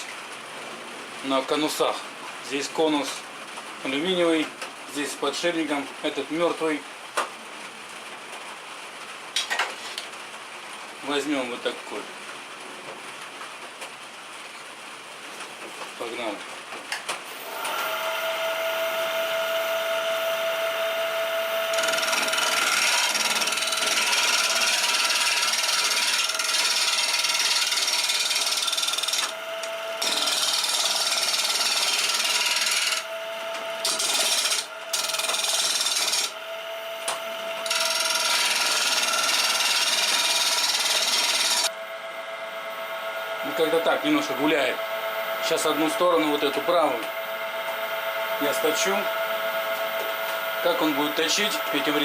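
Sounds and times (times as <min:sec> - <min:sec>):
lathe motor whine: 0:17.3 - 0:52.0
chisel scraping spinning wood: 0:21.7 - 0:29.4, 0:30.0 - 0:36.4, 0:37.6 - 0:41.7.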